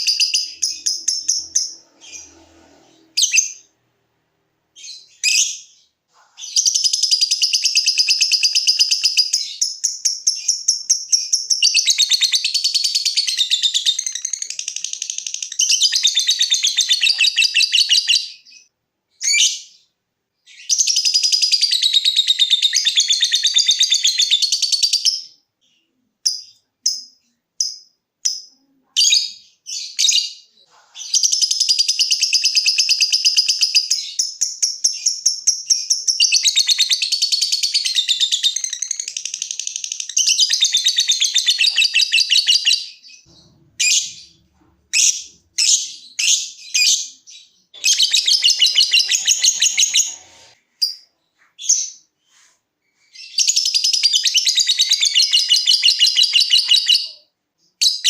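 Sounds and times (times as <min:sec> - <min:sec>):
lovebird chattering: 0:00.0 - 0:02.5, 0:47.8 - 0:51.0.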